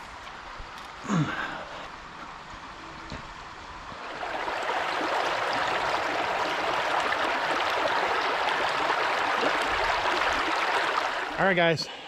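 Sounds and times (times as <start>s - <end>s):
creek water running: 3.9s - 11.8s.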